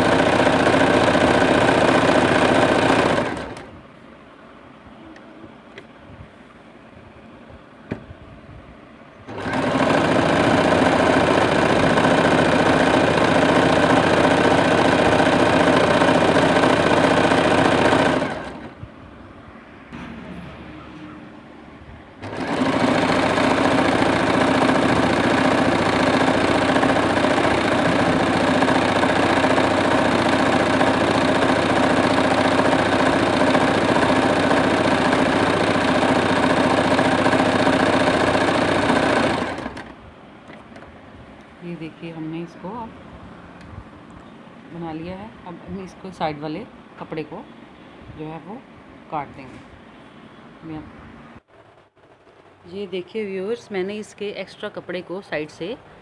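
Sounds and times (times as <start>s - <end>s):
sewing machine running: 0.0s - 3.7s, 9.3s - 18.8s, 22.2s - 40.0s.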